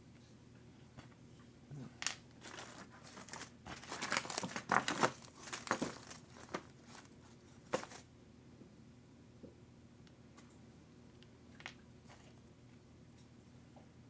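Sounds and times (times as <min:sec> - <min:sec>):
plastic bags crinkling: 0:02.4 - 0:08.0.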